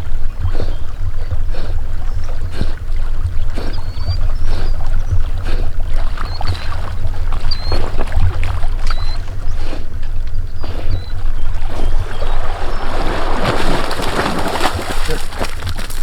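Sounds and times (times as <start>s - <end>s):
steady low rumble: 0.0s - 16.0s
water splashing and sloshing: 0.0s - 16.0s.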